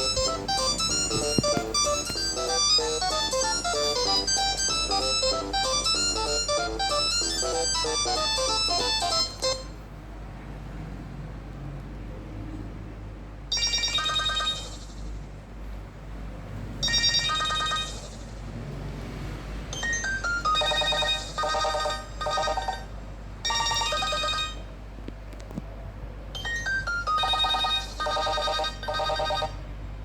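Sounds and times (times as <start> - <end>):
mobile phone ringtone: 0.0 - 9.8, 13.5 - 15.0, 16.8 - 18.4, 19.8 - 24.7, 26.4 - 29.6.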